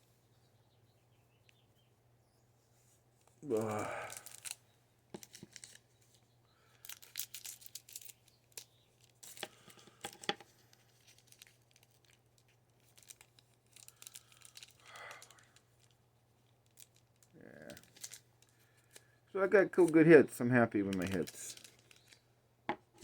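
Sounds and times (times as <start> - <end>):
wrapper crinkling and tearing: 3.5 - 4.6, 5.2 - 5.8, 6.8 - 9.7, 10.7 - 19.0, 20.9 - 22.2.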